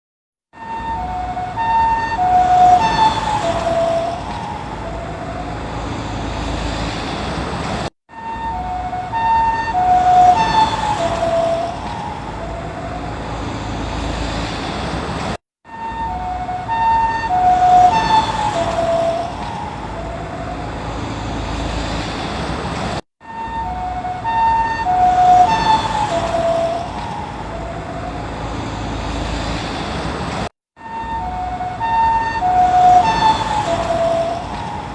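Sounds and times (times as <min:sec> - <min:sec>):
two-tone siren passing: 0:00.5 - 0:07.4, 0:08.1 - 0:14.7, 0:15.6 - 0:22.2, 0:23.2 - 0:29.8, 0:30.8 - 0:34.9
road noise: 0:00.5 - 0:34.9.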